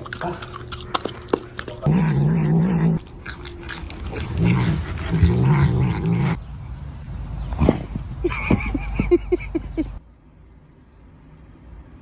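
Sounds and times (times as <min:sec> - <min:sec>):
dog growling: 0:00.1 - 0:06.4.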